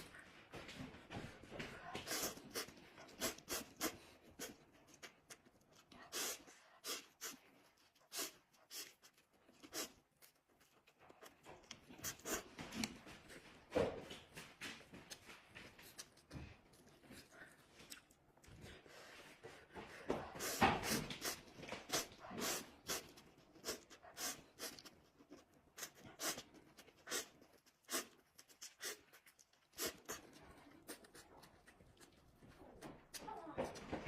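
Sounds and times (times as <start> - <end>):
person chewing: 2.0 - 13.4, 14.8 - 19.1, 20.3 - 33.2.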